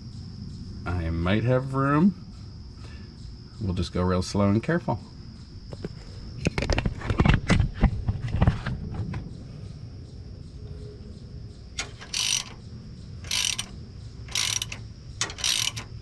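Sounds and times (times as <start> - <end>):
gear puller metal clicks and knocks: 11.8 - 12.6, 13.2 - 16.0
ratchet clicking: 11.8 - 12.6, 13.2 - 16.0.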